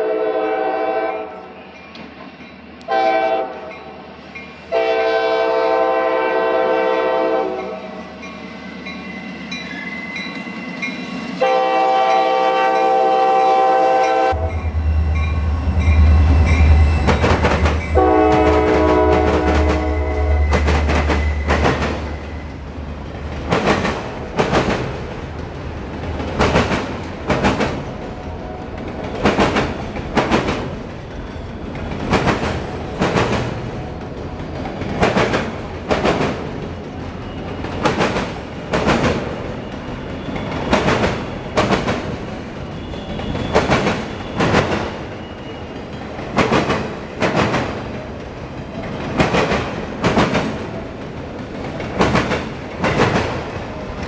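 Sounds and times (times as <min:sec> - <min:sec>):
train rolling rumble: 0:01.9 - 0:54.0
low drone: 0:14.3 - 0:18.0.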